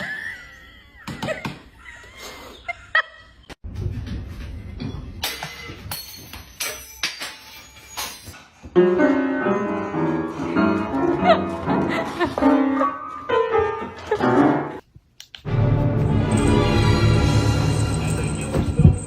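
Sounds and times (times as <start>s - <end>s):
piano music: 8.8s - 14.8s, 15.5s - 19.0s.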